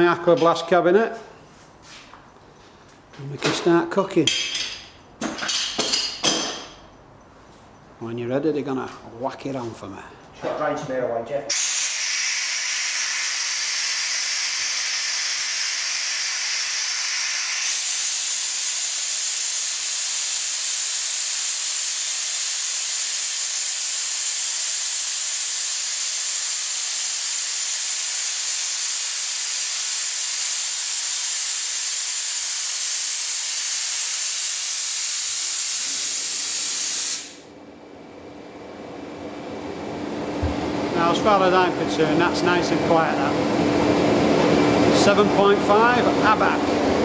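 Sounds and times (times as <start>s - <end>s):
compressed air hissing: 11.5s - 37.5s.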